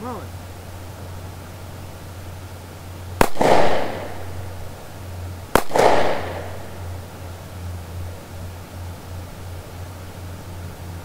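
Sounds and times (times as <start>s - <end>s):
pistol shots with echo: 3.2s - 4.8s, 5.5s - 7.1s.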